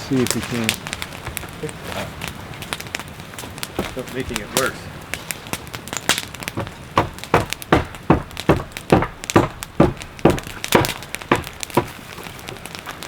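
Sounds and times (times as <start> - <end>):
hammer blows on wood: 6.5 - 12.3.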